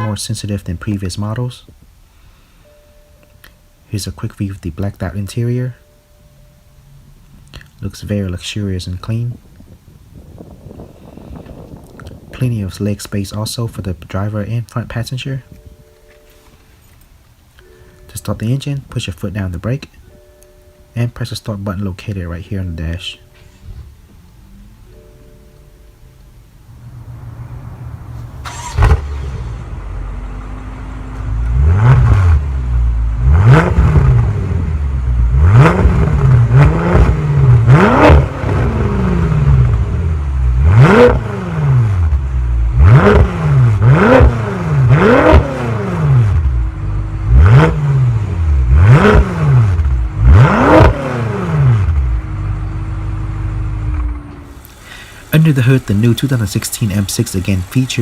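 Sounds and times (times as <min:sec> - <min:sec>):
car engine starting and revving: 0:23.0 - 0:58.0.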